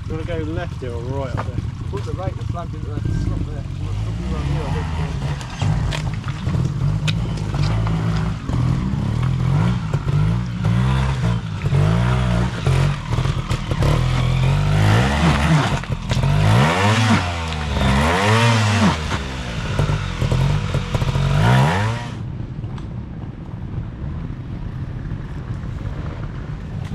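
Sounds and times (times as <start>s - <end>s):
motorcycle engine blipping: 0.0s - 4.1s.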